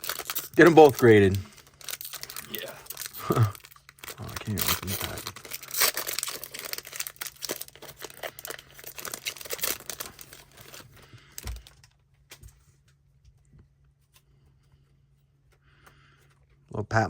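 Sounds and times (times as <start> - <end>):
foil wrapper crinkling and tearing: 0.0 - 12.0.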